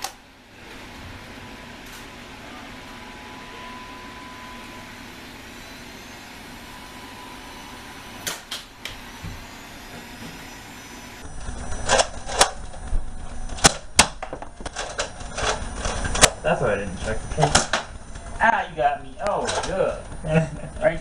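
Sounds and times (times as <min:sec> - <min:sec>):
steady background hiss: 0:11.0 - 0:21.0.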